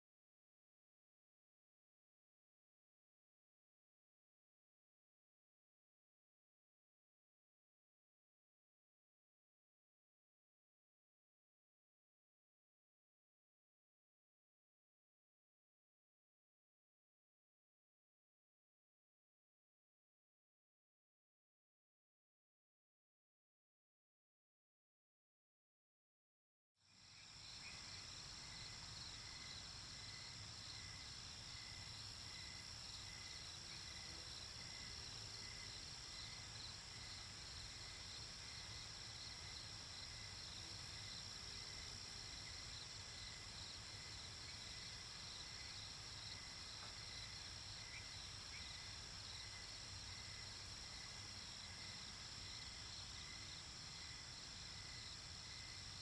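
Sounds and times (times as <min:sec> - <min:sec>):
crickets chirping: 0:26.9 - 0:56.0.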